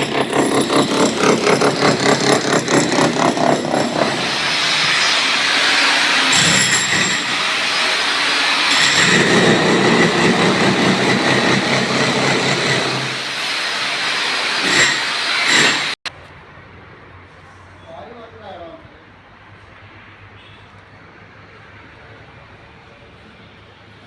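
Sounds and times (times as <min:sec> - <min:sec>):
concrete saw grinding roar: 0:00.0 - 0:16.0.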